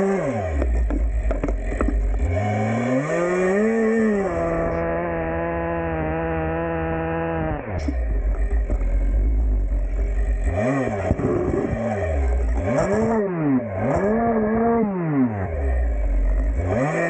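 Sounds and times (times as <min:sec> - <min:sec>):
chainsaw revving: 0:00.0 - 0:17.0
heavy low rumble: 0:07.6 - 0:14.8.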